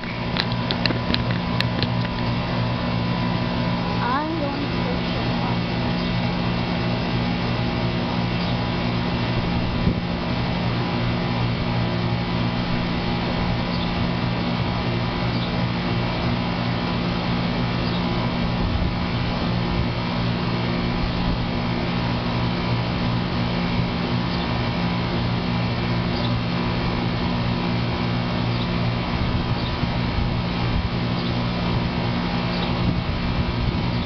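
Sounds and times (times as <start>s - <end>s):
air conditioner humming: 0.0s - 34.0s.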